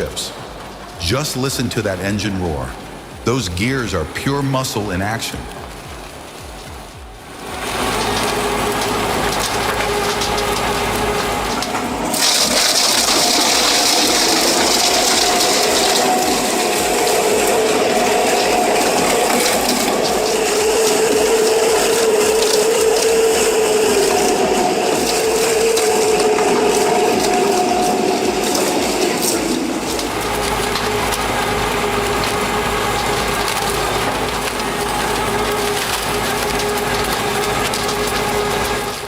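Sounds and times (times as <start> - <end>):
grinding and crunching of wood: 0.0 - 39.0
stump grinder engine drone: 0.0 - 39.0.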